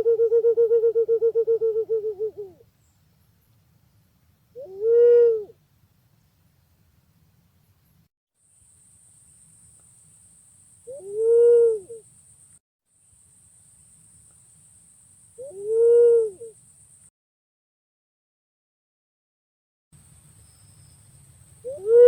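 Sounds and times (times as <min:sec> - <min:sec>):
pigeon cooing: 0:00.0 - 0:02.7, 0:04.6 - 0:05.6, 0:10.9 - 0:12.0, 0:15.4 - 0:16.6, 0:21.7 - 0:22.0
faint steady hiss: 0:01.8 - 0:04.8, 0:05.4 - 0:17.1, 0:20.0 - 0:21.9.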